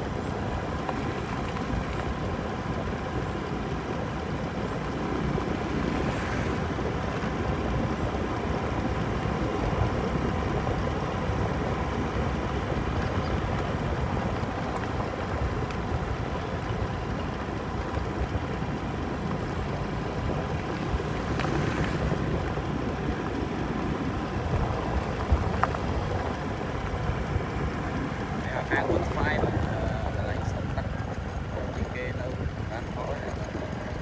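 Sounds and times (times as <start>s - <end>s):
small engine running: 0.0s - 34.0s
wind buffeting microphone: 0.0s - 34.0s.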